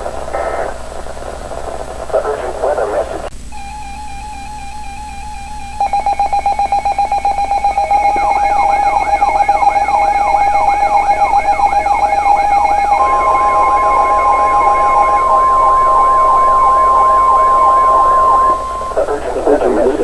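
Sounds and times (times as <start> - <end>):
rapid pulsing beep: 3.5 - 20.0
steady high tone: 3.5 - 20.0
siren-like whoops: 3.6 - 19.0
warbling electronic tone: 3.6 - 20.0.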